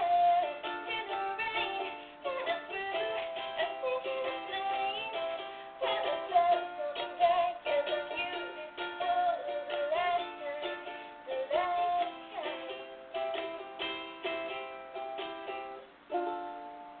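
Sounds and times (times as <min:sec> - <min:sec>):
acoustic guitar strumming: 0:00.0 - 0:17.0.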